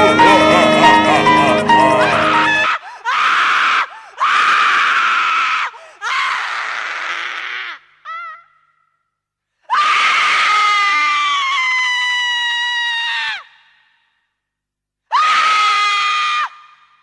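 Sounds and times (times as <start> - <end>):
high-pitched screams: 0.0 - 3.7.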